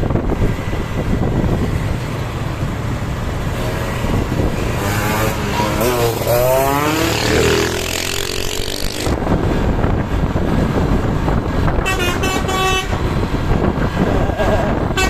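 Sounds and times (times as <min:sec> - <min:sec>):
vehicle driving past: 0:01.3 - 0:09.1
multi-tone bus horn melody: 0:11.7 - 0:13.2, 0:14.7 - 0:15.0.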